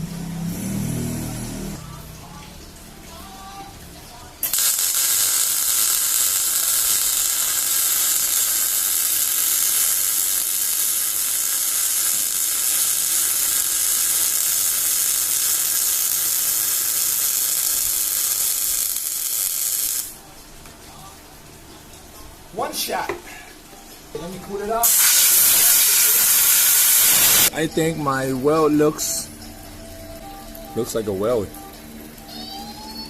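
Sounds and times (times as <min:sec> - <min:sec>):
electric arc welding sizzle: 0:00.1 - 0:01.8, 0:04.4 - 0:20.4, 0:24.2 - 0:31.5.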